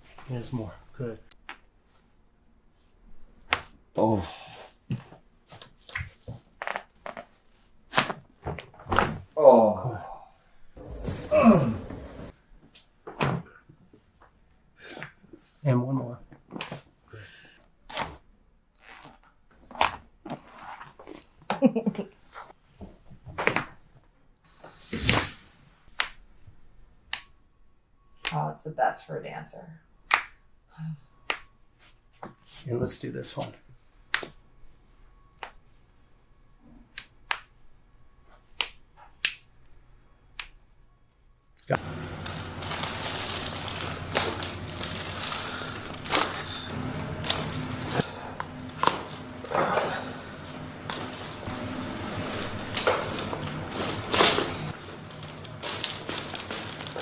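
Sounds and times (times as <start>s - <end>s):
steady low hum: 33.5s - 56.9s.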